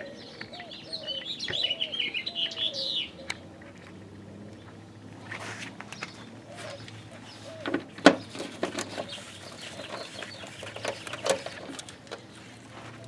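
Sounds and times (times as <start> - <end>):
plastic liner clicking and rustling: 7.6 - 12.4.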